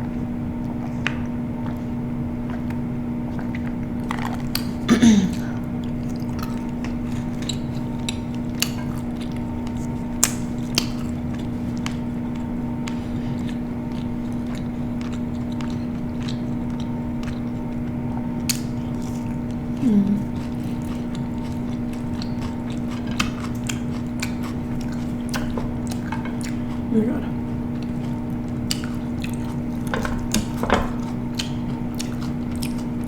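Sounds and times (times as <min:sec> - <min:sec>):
electrical hum: 0:00.0 - 0:33.0
person chewing food: 0:00.0 - 0:33.0
short low vocal sound: 0:19.8 - 0:20.3.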